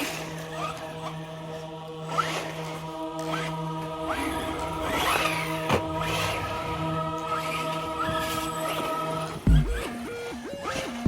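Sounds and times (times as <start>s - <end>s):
music with low drone: 0.0s - 11.0s.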